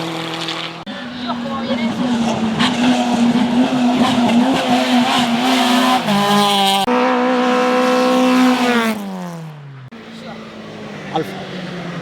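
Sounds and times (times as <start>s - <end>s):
race car engine revving high: 0.0s - 9.5s.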